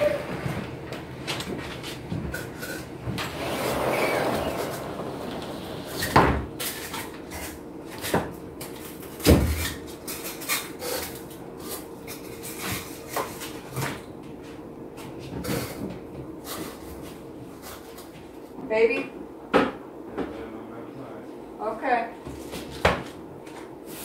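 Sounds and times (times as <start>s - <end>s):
faint hum: 0.0s - 9.0s.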